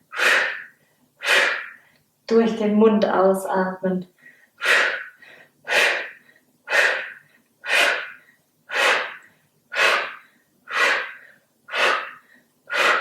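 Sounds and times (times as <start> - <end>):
woman's sharp exhalations: 4.2 - 9.2, 9.8 - 13.0.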